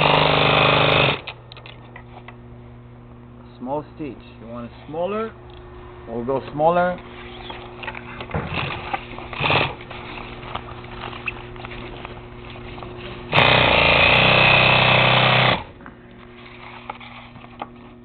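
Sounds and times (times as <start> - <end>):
sewing machine running: 0.0 - 1.2, 8.5 - 9.8, 13.3 - 15.7
steady low hum: 0.0 - 18.0.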